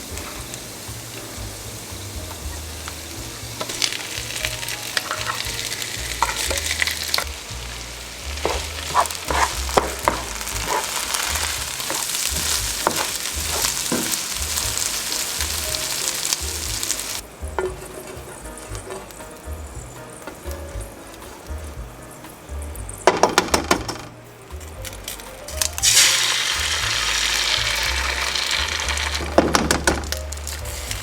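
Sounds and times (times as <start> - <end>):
hash sizzling in a pan: 0.0 - 23.9, 24.5 - 31.0
utensil scraping a pan: 3.5 - 21.5.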